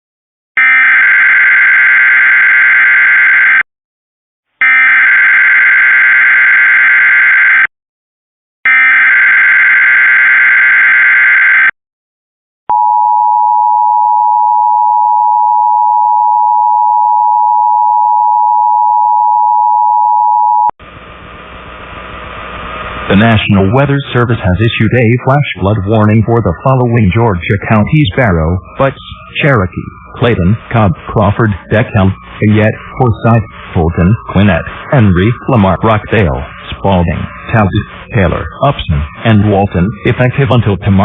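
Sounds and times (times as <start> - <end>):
harsh digital data tones: 23.1 - 41.0.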